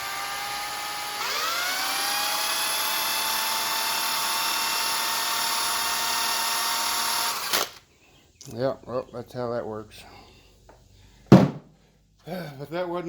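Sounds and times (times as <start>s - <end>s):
electric drill motor whining: 0.0s - 7.8s.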